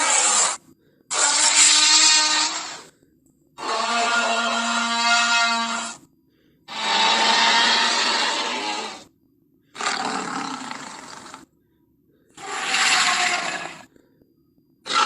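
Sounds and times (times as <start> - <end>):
dinosaur roars: 6.7 - 9.1, 9.7 - 11.5, 12.4 - 13.9.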